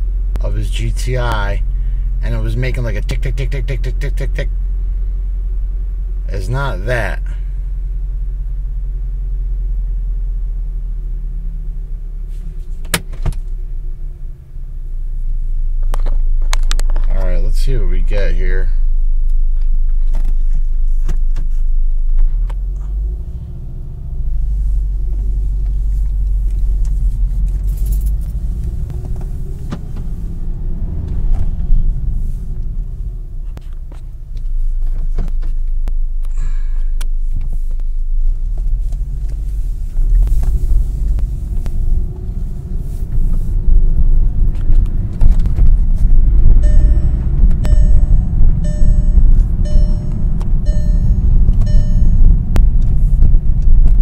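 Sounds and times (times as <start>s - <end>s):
car engine rumbling: 0.0s - 54.0s
pitched beeping: 46.6s - 52.5s.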